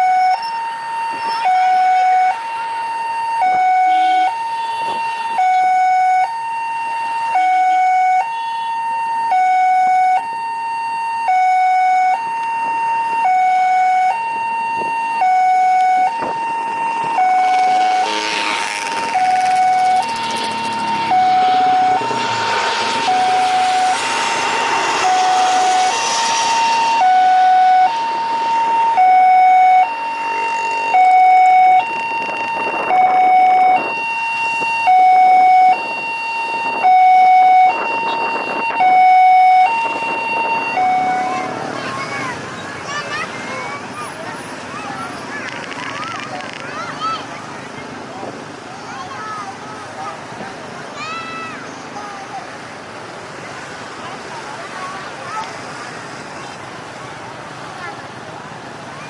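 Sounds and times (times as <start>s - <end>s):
two-tone siren: 0.0s - 42.6s
jet airliner passing low: 17.1s - 31.0s.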